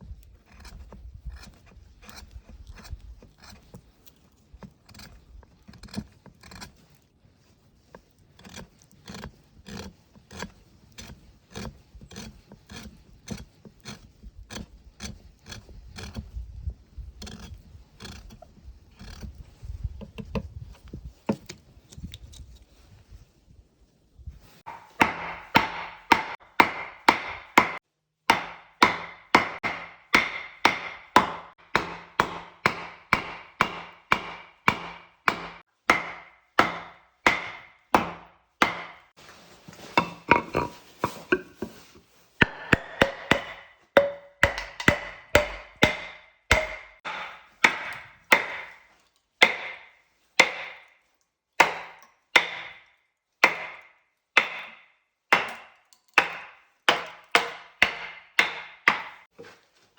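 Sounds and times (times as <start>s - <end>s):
chopping into wood: 24.7s - 39.1s, 42.4s - 50.9s, 51.6s - 52.8s, 53.4s - 59.3s.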